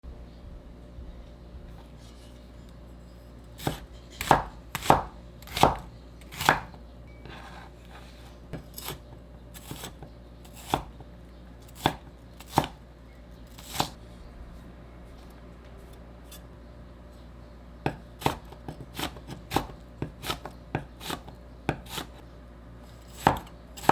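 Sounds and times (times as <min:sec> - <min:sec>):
knife chopping on cutting board: 0:03.6 - 0:09.0, 0:09.6 - 0:11.0, 0:11.7 - 0:12.8, 0:13.5 - 0:14.0, 0:17.8 - 0:22.2, 0:23.1 - 0:23.9.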